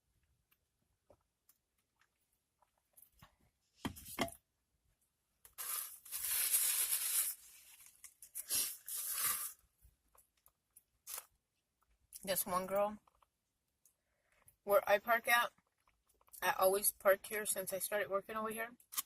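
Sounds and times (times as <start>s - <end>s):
packaging crinkling and tearing: 5.5s - 9.6s.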